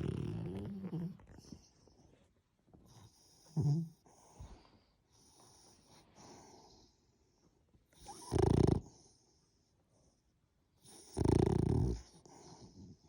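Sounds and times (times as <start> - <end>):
dog snoring: 0.0 - 1.7, 2.8 - 4.4, 8.0 - 9.2, 10.8 - 13.0
soft dog breaths: 0.0 - 13.0.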